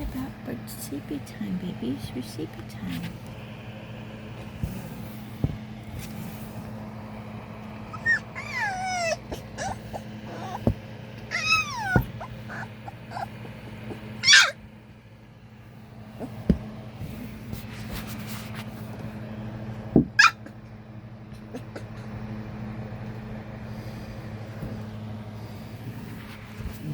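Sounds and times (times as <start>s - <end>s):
steady low hum: 0.0s - 26.9s
puppies whining: 7.5s - 14.6s, 20.2s - 20.7s
puppy yelp: 7.8s - 10.7s, 11.3s - 14.6s, 20.2s - 20.6s.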